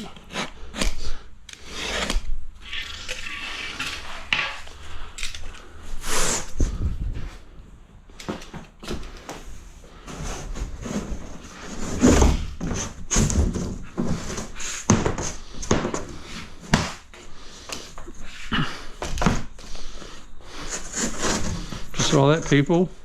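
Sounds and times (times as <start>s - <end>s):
cement sheet scraping: 1.6s - 4.7s, 9.9s - 17.1s, 20.5s - 22.3s.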